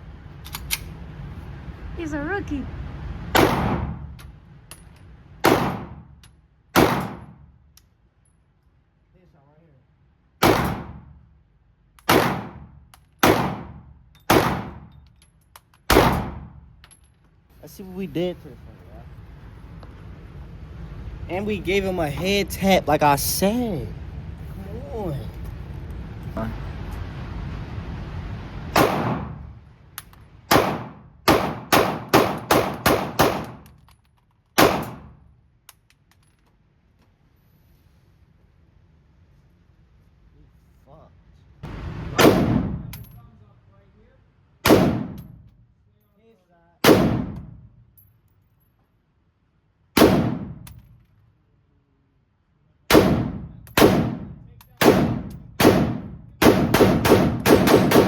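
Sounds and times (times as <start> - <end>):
gunshots: 3.3 - 4.2, 5.4 - 6.2, 6.8 - 7.4, 10.4 - 11.2, 12.0 - 14.9, 15.9 - 16.6, 28.7 - 29.6, 30.5 - 33.7, 34.6 - 35.2, 42.1 - 43.0, 44.6 - 45.4, 46.8 - 47.7, 50.0 - 50.7, 52.9 - 58.0.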